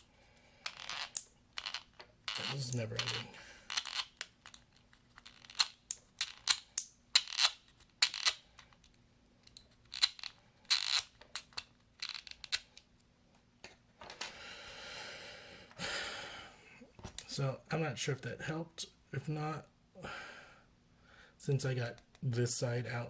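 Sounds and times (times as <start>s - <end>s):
small tools clicking and scraping: 0.6s - 12.8s.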